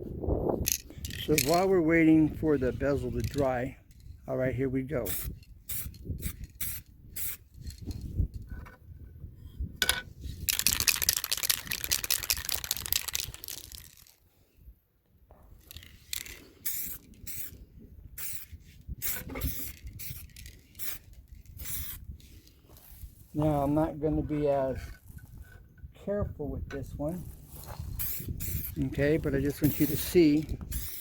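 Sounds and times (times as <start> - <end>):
handling knocks and clicks: 0.7 - 1.6
aerosol spray can hissing: 18.2 - 22.0, 28.0 - 28.8, 29.6 - 31.0.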